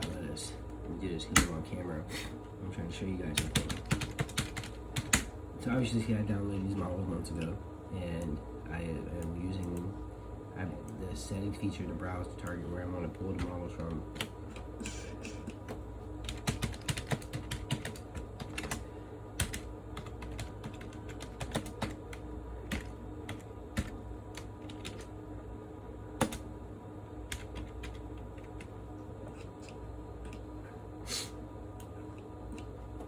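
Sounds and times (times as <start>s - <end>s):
steady low hum: 0.0s - 33.0s
computer keyboard typing: 3.3s - 5.3s, 12.4s - 14.7s, 15.4s - 18.8s, 19.4s - 25.1s, 26.2s - 26.5s, 27.2s - 30.4s.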